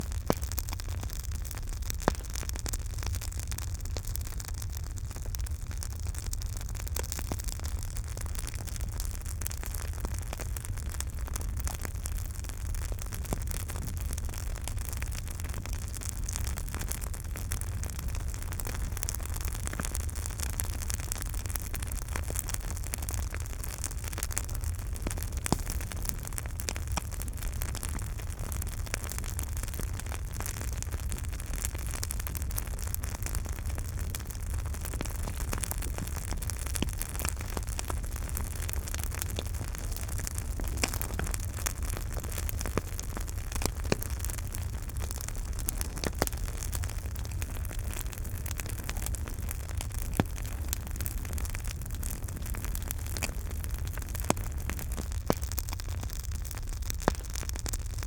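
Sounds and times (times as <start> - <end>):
low rumble of flames: 0.0 - 58.0
wood crackling: 0.1 - 58.0.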